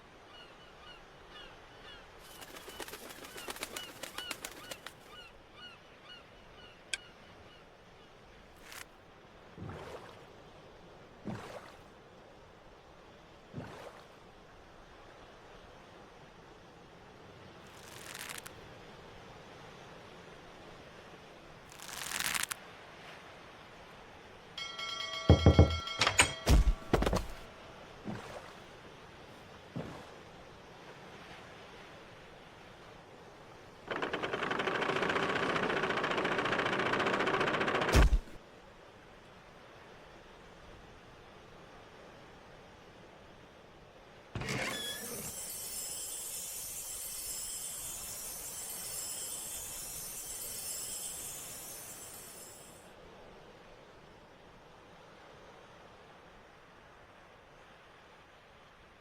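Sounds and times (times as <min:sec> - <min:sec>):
gulls calling: 0:01.9 - 0:07.1
steady hiss: 0:17.6 - 0:18.6, 0:21.7 - 0:22.6, 0:44.5 - 0:52.8
creaking rattling clatter: 0:25.2 - 0:27.5, 0:33.9 - 0:38.4
sharp clicks and knocks: 0:25.3 - 0:27.4.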